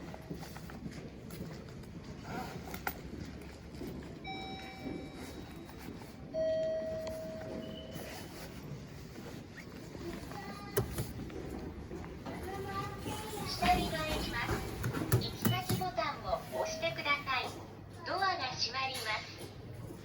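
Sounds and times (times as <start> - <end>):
low elevator chime tone: 4.2 - 8.3
elevator beep: 4.2 - 8.4.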